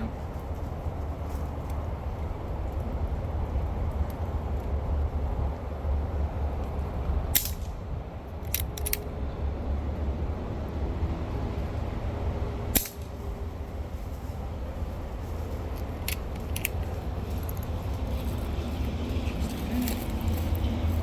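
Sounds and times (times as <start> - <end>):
low rumble: 0.0 - 21.0
sharp clicks: 8.4 - 9.1.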